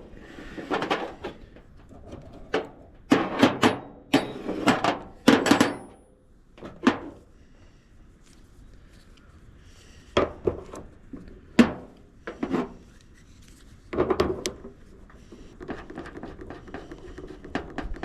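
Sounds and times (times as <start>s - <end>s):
metal engine parts clanking: 0.5s - 7.2s.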